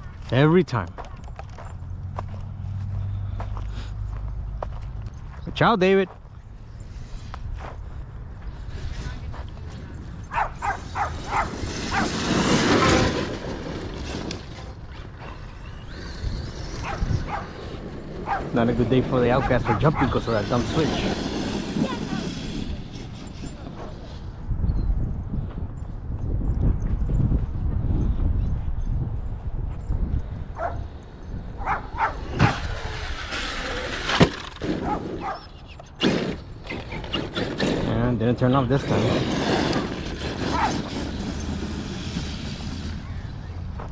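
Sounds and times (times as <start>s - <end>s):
electric rc truck running over dirt: 8.4s - 24.5s, 30.0s - 43.9s
dog yipping: 10.3s - 12.2s, 16.8s - 17.6s, 18.2s - 18.5s, 19.4s - 20.2s, 30.6s - 30.8s, 31.6s - 33.0s, 34.8s - 35.8s, 40.5s - 40.8s
rc truck landing thud: 32.3s - 35.2s.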